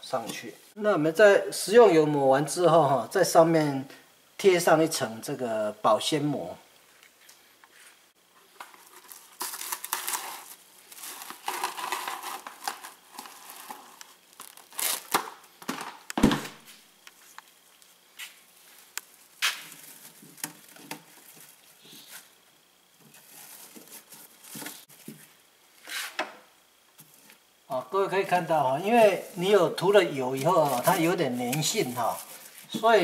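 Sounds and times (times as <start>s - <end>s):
cling film rustling and crinkling: 6.8s - 22.4s, 23.0s - 25.4s, 28.8s - 33.0s.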